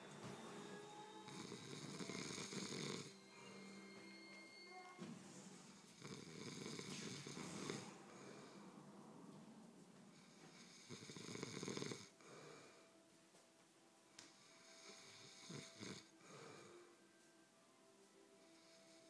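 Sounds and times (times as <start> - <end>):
quiet breathing: 0.9 - 13.2, 14.1 - 19.0
person snoring: 1.3 - 3.2, 6.0 - 8.6, 10.2 - 12.8, 14.4 - 16.9.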